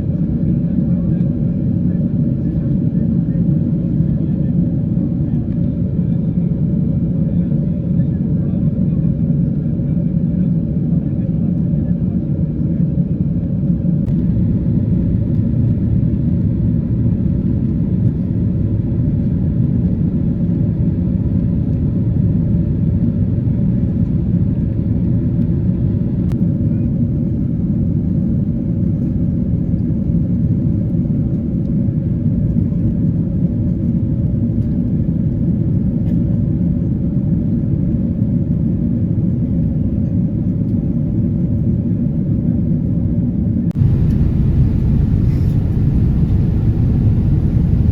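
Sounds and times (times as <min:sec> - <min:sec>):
airliner cabin rumble: 0:43.7 - 0:47.9.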